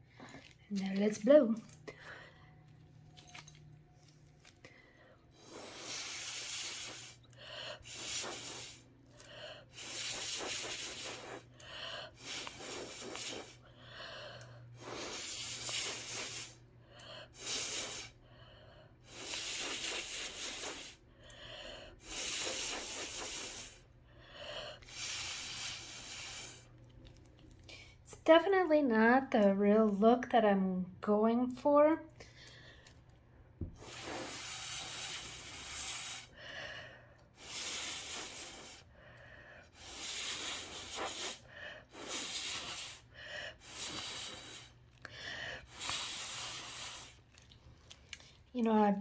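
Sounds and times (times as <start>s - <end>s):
breath puffs through a metal straw: 4.7s - 26.7s, 33.7s - 47.4s.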